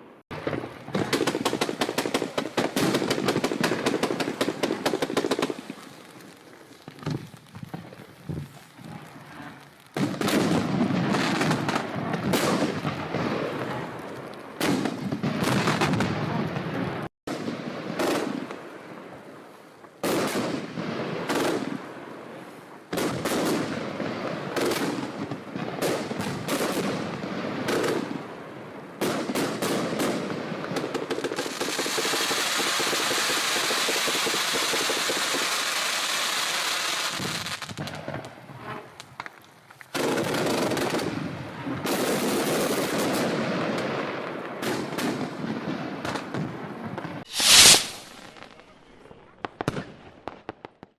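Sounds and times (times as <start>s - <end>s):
firework volleys of sharp reports: 0.0s - 19.0s, 28.9s - 38.7s, 47.0s - 50.9s
firework dense hiss: 31.3s - 38.0s, 47.2s - 49.0s
loud firework bang: 47.3s - 48.5s.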